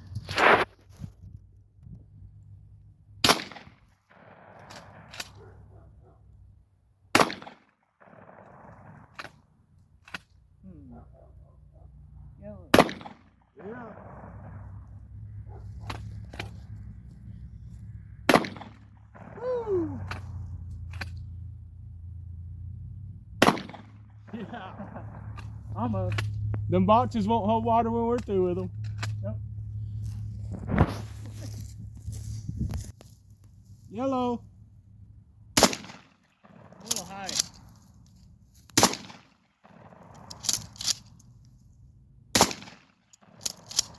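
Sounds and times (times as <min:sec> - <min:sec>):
shotgun shots: 0:03.2 - 0:05.4, 0:07.1 - 0:09.4, 0:12.7 - 0:14.8, 0:18.2 - 0:19.4, 0:23.4 - 0:25.4, 0:35.6 - 0:37.3, 0:38.8 - 0:40.3, 0:42.3 - 0:43.7.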